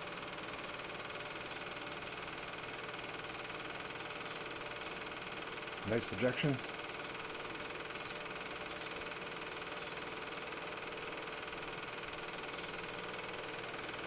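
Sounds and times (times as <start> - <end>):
film projector running: 0.0 - 14.0.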